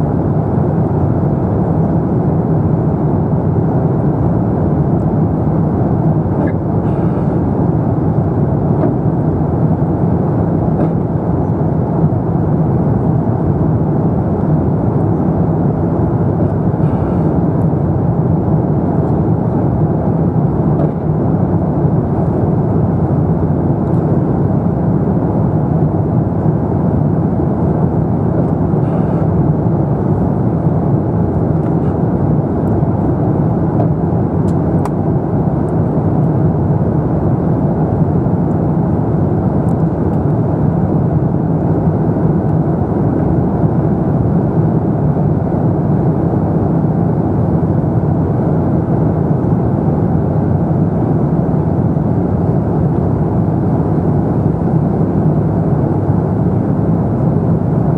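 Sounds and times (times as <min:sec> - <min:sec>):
airplane cabin noise in flight: 0:00.0 - 0:57.9.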